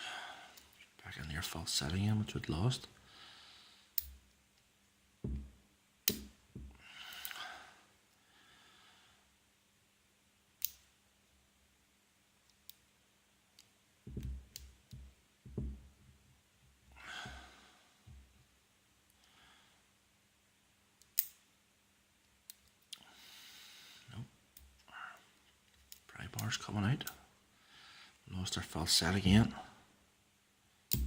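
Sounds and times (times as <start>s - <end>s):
handling knocks: 5.2s - 6.8s, 14.1s - 14.5s, 15.4s - 16.0s.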